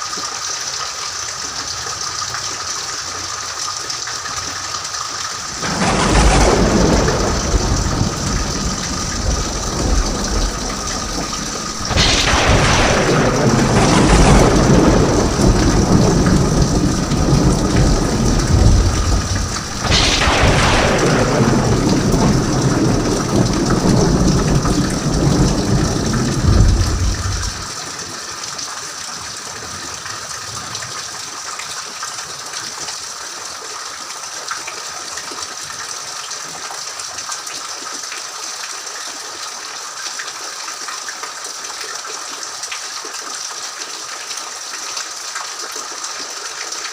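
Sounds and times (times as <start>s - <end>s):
steady rain: 0.0s - 46.9s
thunderclaps with low rumble: 5.5s - 27.7s.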